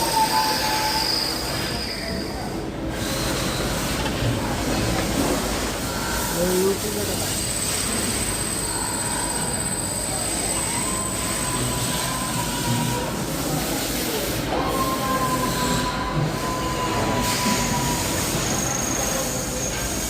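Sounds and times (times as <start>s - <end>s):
high-pitched whine: 0.0s - 3.7s.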